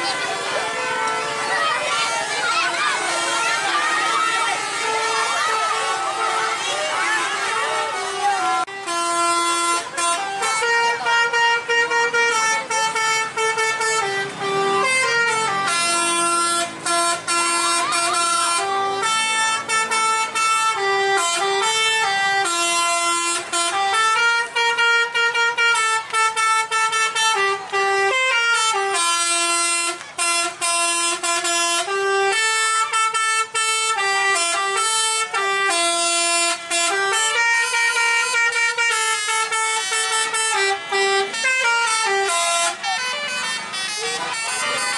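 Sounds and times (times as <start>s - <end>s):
musical bus air horns: 0.0s - 44.9s.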